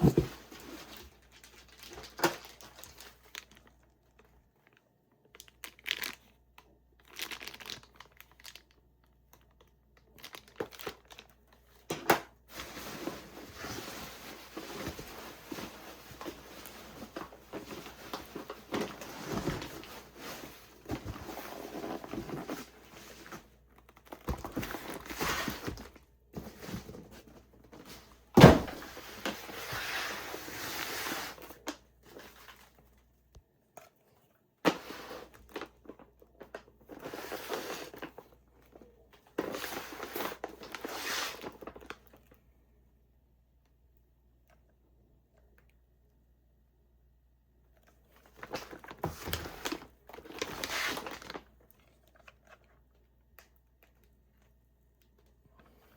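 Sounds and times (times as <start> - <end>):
cardboard packaging rustling: 0.0 - 4.3, 10.2 - 32.8, 48.2 - 52.7.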